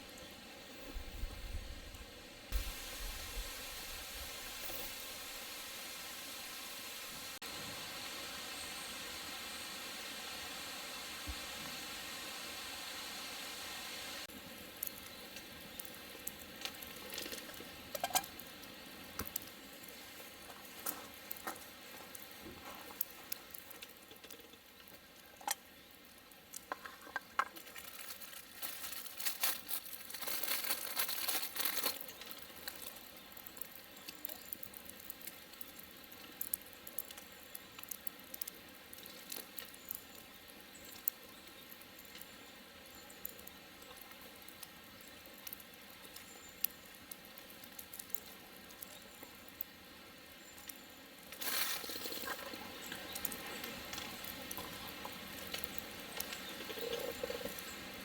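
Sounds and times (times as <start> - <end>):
food sizzling in a skillet: 2.5 - 25.6, 50.4 - 58.0.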